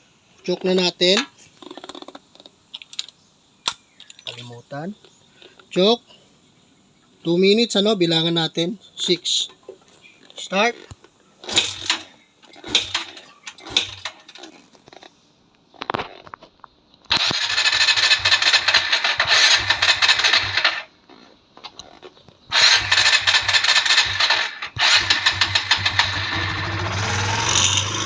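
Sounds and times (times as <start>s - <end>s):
motorcycle starter cranking: 11.4s - 14.6s, 17.1s - 20.9s, 22.5s - 28.0s.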